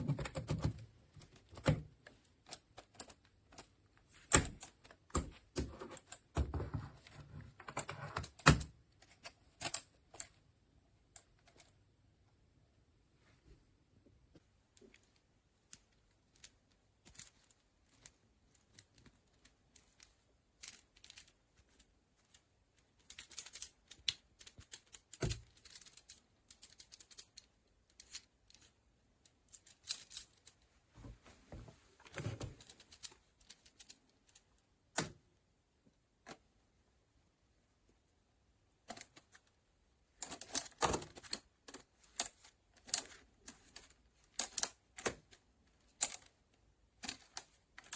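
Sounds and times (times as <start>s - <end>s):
small hard parts clicking: 14.6s - 30.6s, 40.2s - 47.9s.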